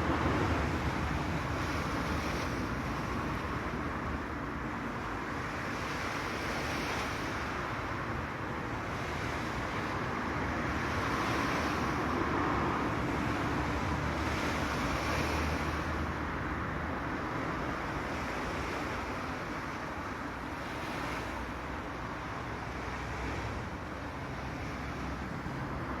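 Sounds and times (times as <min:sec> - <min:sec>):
wind rumbling on microphone: 0:00.0 - 0:05.6
sea waves washing: 0:00.0 - 0:26.0.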